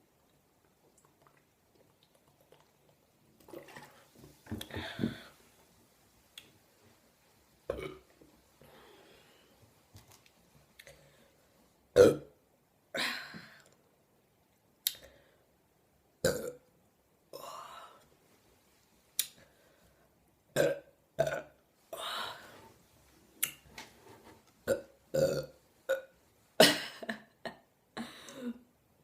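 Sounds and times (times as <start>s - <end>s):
woman burping: 7.7s - 8.0s, 12.0s - 12.3s, 16.2s - 16.6s, 20.6s - 21.5s, 24.7s - 27.2s.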